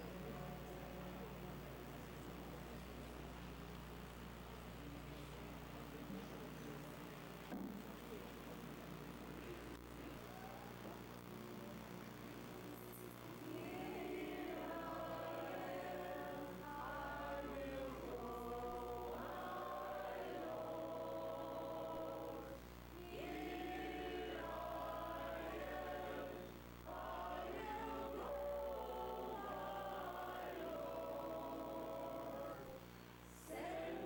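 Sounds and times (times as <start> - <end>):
steady low hum: 0.0 - 34.0
choir singing: 13.4 - 32.8, 33.4 - 34.0.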